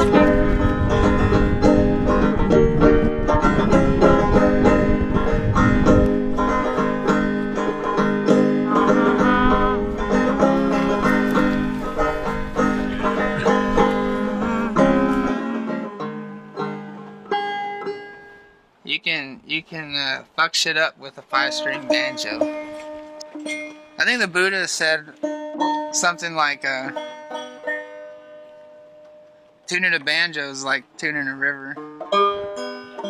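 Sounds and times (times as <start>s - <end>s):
banjo picking: 0.0s - 18.5s, 21.3s - 33.0s.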